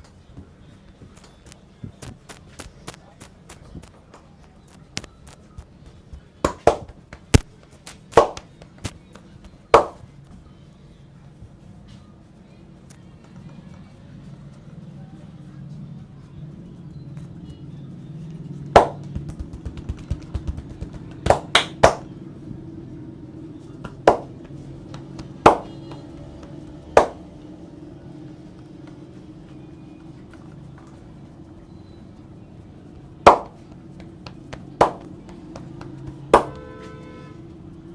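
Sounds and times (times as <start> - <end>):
hand slaps on head: 6.5 - 9.0, 9.8 - 10.0, 18.8 - 22.1, 24.1 - 25.8, 27.0 - 27.2, 33.3 - 33.6, 34.8 - 36.7.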